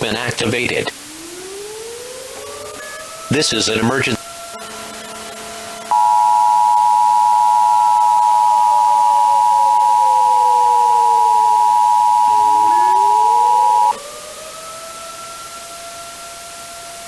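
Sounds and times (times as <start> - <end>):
faint civil defense siren: 1.1 - 3.3, 4.3 - 17.0
two-tone alert beep: 5.9 - 13.9.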